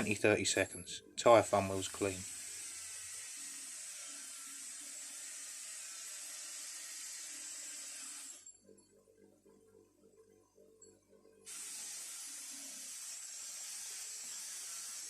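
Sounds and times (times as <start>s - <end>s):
wire wheel grinder whirring: 1.4s - 8.6s, 11.5s - 15.0s.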